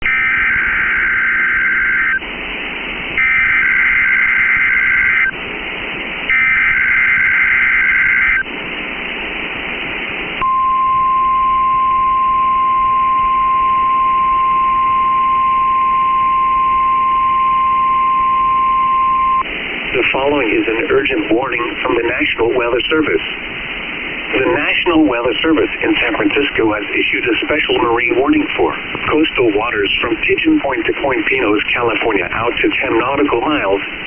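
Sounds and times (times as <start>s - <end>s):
steady alarm tone: 0.0s - 2.2s, 3.2s - 5.4s, 6.3s - 8.5s, 10.4s - 19.4s
radio static hiss: 0.0s - 10.5s, 12.8s - 34.0s
screechy data bursts: 0.1s - 2.2s, 3.2s - 5.3s, 6.3s - 8.4s.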